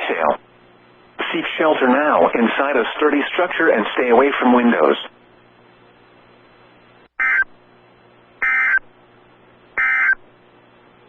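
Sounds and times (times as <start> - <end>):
faint radio hiss and hum: 0.0 - 11.0
digital data tone bursts: 8.4 - 8.8, 9.8 - 10.2.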